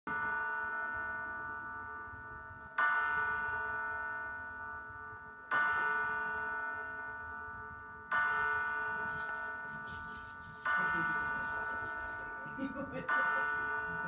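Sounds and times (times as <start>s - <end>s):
bell tolling: 8.1s - 14.0s.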